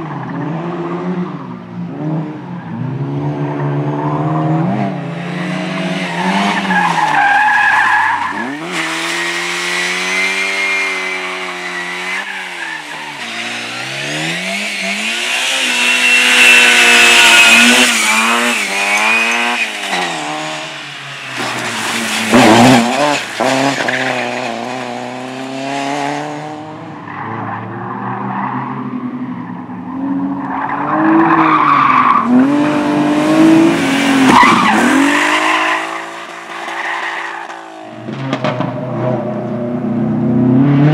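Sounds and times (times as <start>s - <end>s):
race car engine revving: 1.9s - 27.9s, 30.4s - 36.6s.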